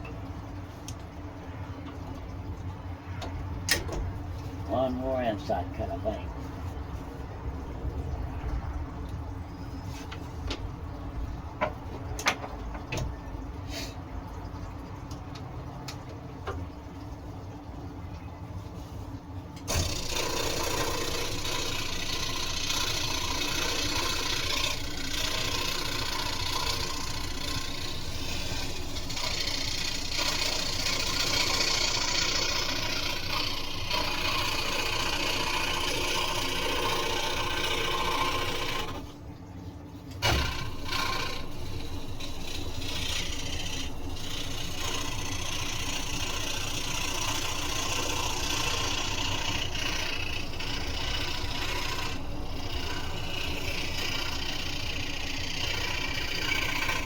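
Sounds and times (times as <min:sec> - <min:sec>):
scroll saw cutting wood: 0:19.6 - 0:39.1, 0:40.2 - 0:57.0.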